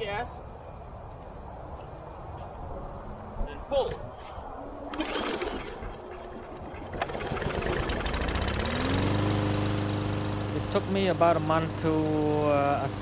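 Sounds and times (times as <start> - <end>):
lawn mower engine starting and running: 4.8 - 13.0.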